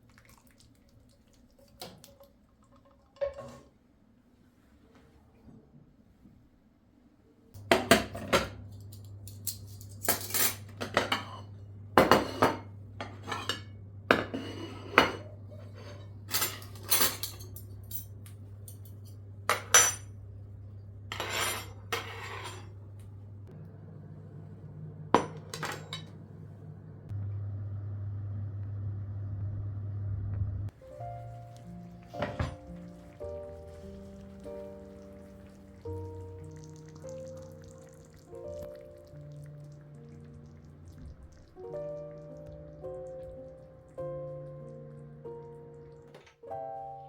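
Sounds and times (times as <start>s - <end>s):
dishes and cutlery clattering: 3.2s - 3.7s, 7.6s - 20.2s, 21.1s - 22.8s, 25.2s - 26.2s, 31.6s - 37.2s
steady low hum: 15.2s - 36.4s.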